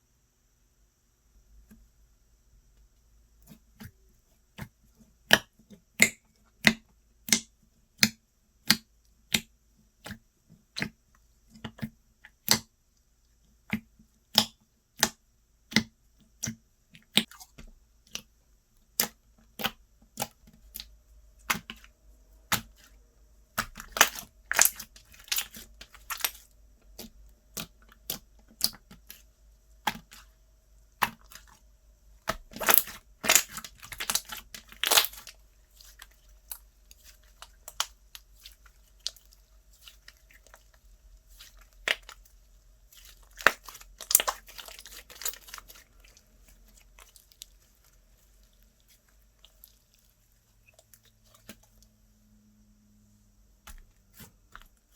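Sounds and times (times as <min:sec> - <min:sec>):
slime wet clicks and pops: 0:05.3 - 0:09.5, 0:23.6 - 0:26.4, 0:32.3 - 0:35.3, 0:43.4 - 0:45.8.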